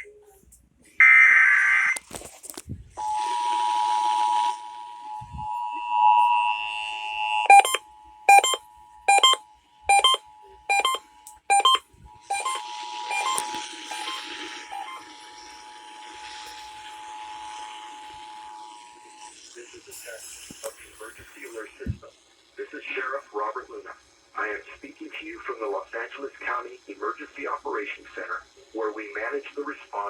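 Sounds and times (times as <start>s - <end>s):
short loud beeps: 7.4s - 15.1s
two-tone alert signal: 7.5s - 15.1s.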